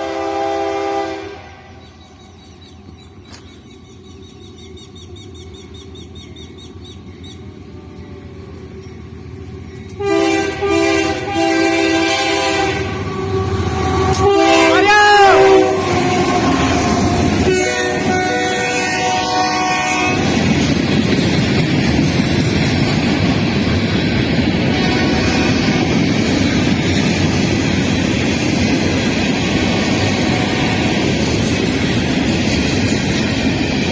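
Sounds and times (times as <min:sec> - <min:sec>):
locomotive air horn blasts: 0:00.0 - 0:01.8, 0:10.0 - 0:20.4, 0:24.7 - 0:25.9, 0:30.1 - 0:31.0
train rumbling past: 0:00.0 - 0:33.9.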